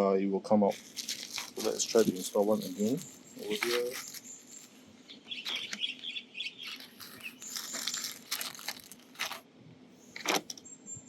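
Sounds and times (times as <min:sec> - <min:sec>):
squeaky plastic rubbing: 0:00.7 - 0:09.4.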